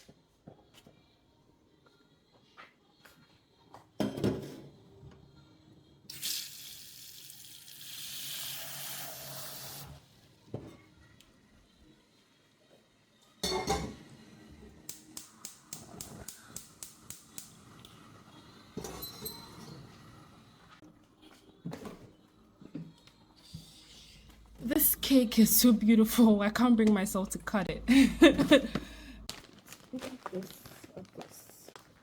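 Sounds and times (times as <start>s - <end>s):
dishes clattering: 4.0s - 4.6s, 13.4s - 14.0s, 18.8s - 19.9s
tap water running: 6.1s - 10.0s.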